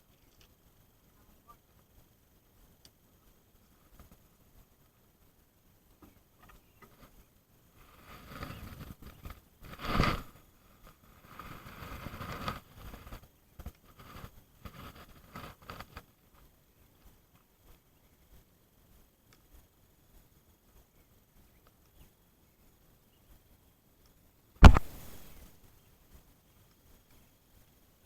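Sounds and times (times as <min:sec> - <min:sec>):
fishing gear rustling and scraping: 0:08.0 - 0:13.2
sharp knock: 0:24.6 - 0:25.4.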